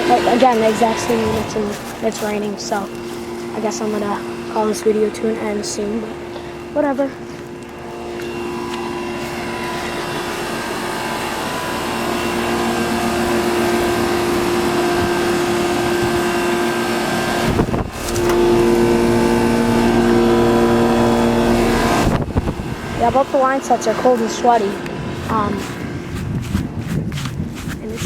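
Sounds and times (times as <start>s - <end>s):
compressor hum: 0.0s - 28.0s
condenser fans rushing: 0.0s - 28.0s.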